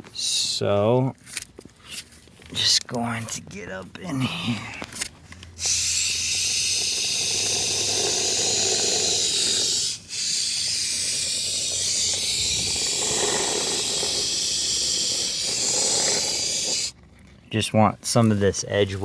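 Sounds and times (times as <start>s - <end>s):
aerosol can spraying: 5.6s - 16.9s.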